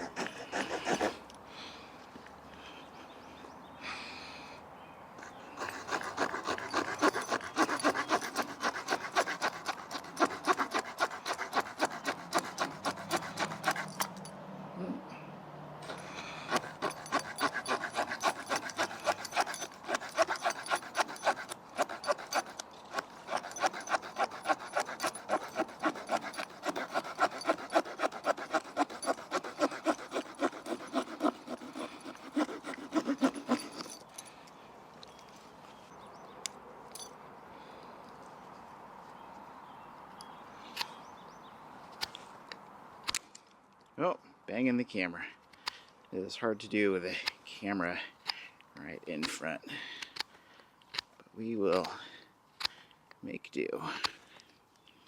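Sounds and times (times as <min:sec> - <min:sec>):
small saw cutting wood: 0:00.0 - 0:01.3, 0:05.2 - 0:14.3, 0:15.8 - 0:34.1.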